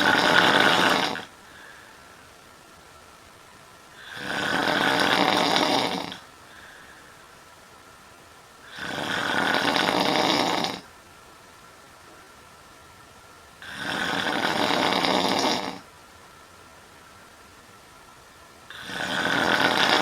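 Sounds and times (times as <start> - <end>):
woman snoring loudly: 0.0 - 1.3, 4.0 - 6.3, 8.6 - 10.9, 13.6 - 15.9, 18.7 - 20.0.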